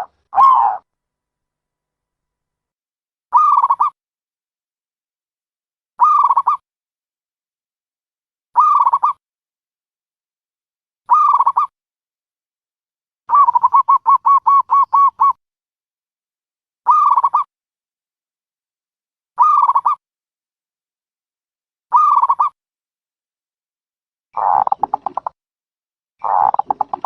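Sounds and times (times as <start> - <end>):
dove cooing: 0.0 - 0.8, 24.4 - 25.3, 26.2 - 27.0.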